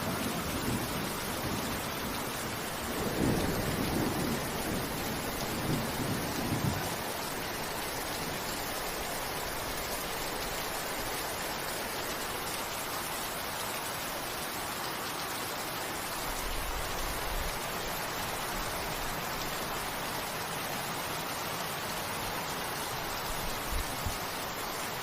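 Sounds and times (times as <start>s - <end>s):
steady rain hiss: 0.0s - 25.0s
low thunder rumble: 0.1s - 7.0s.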